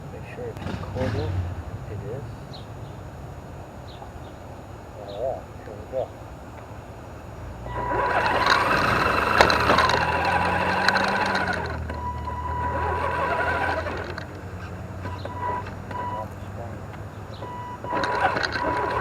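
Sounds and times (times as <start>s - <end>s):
sharp clicks from chassis: 0.5s - 1.4s, 7.7s - 19.0s
electric motor and gears whining: 7.4s - 19.0s.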